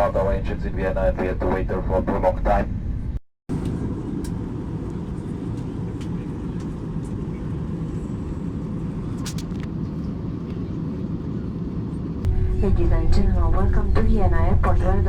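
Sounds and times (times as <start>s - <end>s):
airplane cabin rumble: 0.0s - 15.0s
faint clicks: 3.6s - 8.0s.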